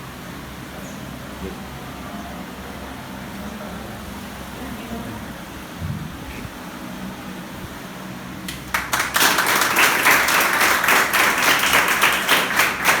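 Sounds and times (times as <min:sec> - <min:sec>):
audience clapping: 0:08.4 - 0:13.0.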